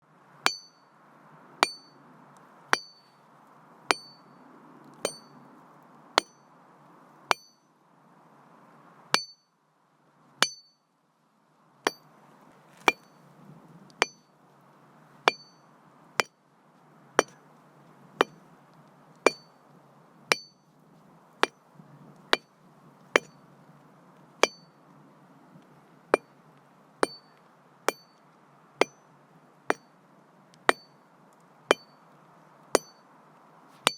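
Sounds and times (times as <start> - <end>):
hammer striking masonry: 0.5 - 0.8, 1.6 - 1.9, 2.8 - 3.1, 3.9 - 4.2, 5.0 - 5.4, 6.2 - 6.4, 7.3 - 7.6, 9.2 - 9.4, 10.4 - 10.7, 11.9 - 12.1, 12.8 - 13.1, 14.0 - 14.2, 15.2 - 15.6, 17.2 - 17.4, 18.2 - 18.4, 19.3 - 19.5, 20.3 - 20.6, 24.4 - 24.7, 27.0 - 27.3, 27.9 - 28.2, 28.8 - 29.0, 30.7 - 30.9, 31.7 - 31.9, 32.8 - 33.0.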